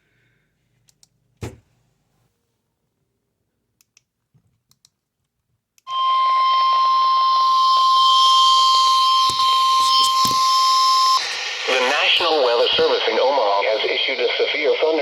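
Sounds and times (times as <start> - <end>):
steady high alarm beep: 5.9 - 12.8
radio hiss: 8.7 - 15.0.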